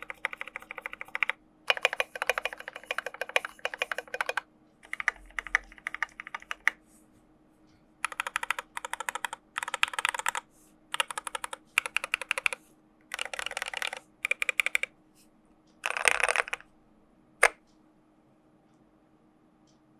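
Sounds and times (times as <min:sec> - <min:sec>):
mechanical keyboard typing: 0:00.0 - 0:06.8, 0:08.0 - 0:14.9, 0:15.8 - 0:16.7.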